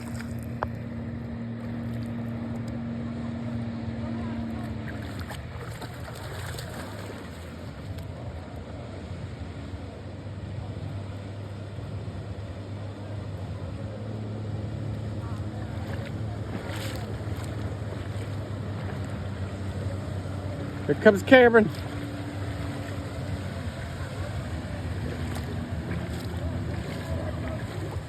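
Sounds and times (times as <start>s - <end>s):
water splashing: 0.0s - 8.3s, 14.4s - 28.0s
jet ski engine running: 0.0s - 28.0s
wind: 0.0s - 28.0s.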